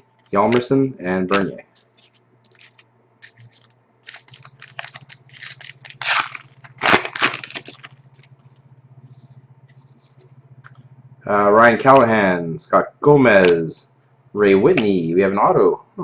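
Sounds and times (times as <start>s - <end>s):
cards being handled: 0.5s - 8.6s
wrapper ripping: 1.3s - 8.4s
wrapper crinkling: 1.3s - 8.6s.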